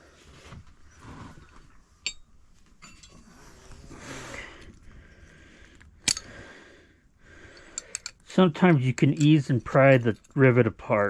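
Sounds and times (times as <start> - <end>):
metallic clink: 2.0 - 3.3, 6.0 - 6.4, 7.6 - 10.4.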